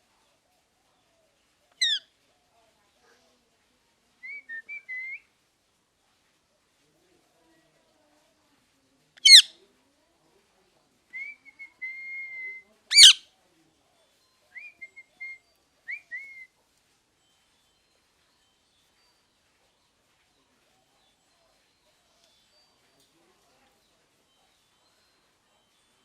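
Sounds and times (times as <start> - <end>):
parrot shrieking: 1.8 - 2.0, 9.2 - 9.5, 12.9 - 13.2
parrot whistling: 1.8 - 2.0, 12.9 - 13.2.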